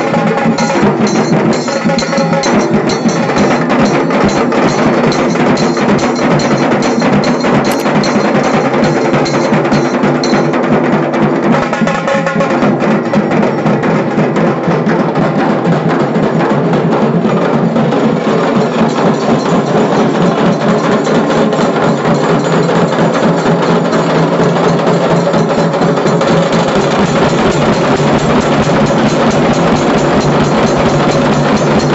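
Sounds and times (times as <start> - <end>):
rapid stick drumming: 0.0 - 10.8, 18.1 - 31.9.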